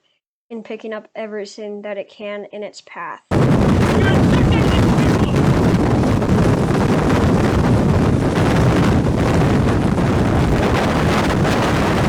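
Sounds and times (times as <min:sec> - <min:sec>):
strong wind blasting microphone: 0:03.3 - 0:12.0.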